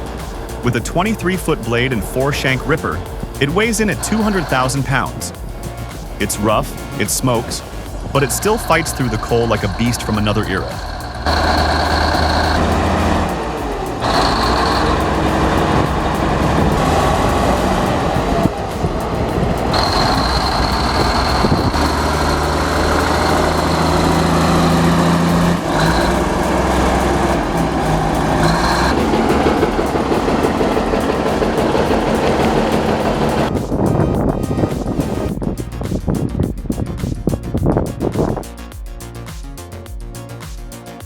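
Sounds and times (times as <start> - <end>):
high whine: 0.0 - 41.0
bulldozer engines droning: 6.2 - 33.6.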